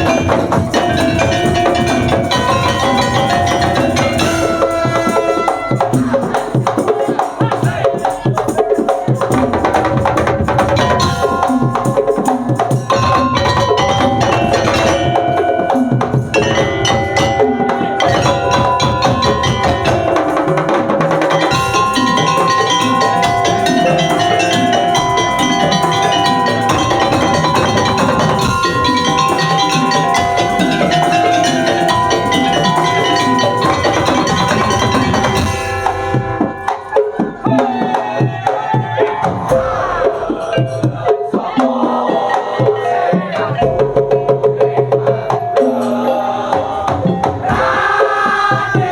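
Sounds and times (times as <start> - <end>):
wooden slit drums: 0.0 - 43.8
percussion ensemble playing: 0.0 - 48.9.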